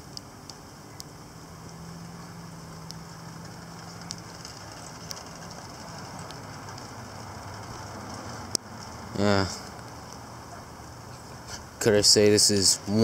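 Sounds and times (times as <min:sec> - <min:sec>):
low steady hum: 0:00.0 - 0:13.0
sharp ticks: 0:02.7 - 0:09.0.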